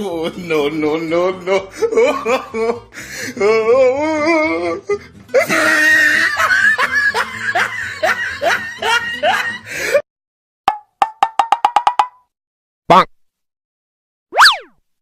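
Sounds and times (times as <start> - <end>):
loud laughter: 1.6 - 2.8, 5.4 - 9.8.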